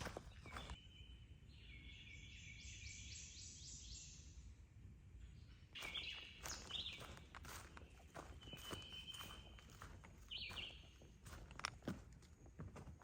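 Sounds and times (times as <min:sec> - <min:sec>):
footsteps: 0:00.0 - 0:00.8, 0:05.8 - 0:13.0
songbird singing: 0:00.0 - 0:13.0.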